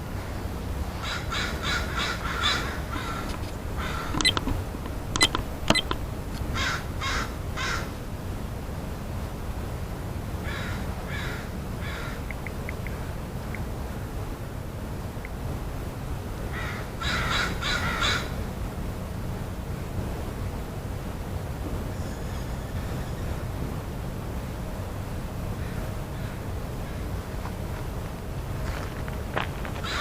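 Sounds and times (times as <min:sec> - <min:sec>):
steady low rumble: 0:00.0 - 0:30.0
crows cawing: 0:01.0 - 0:04.2, 0:06.5 - 0:07.9, 0:10.4 - 0:12.3, 0:16.5 - 0:18.4, 0:25.6 - 0:27.1, 0:29.8 - 0:30.0
sharp clicks: 0:03.3 - 0:06.5, 0:12.2 - 0:13.7.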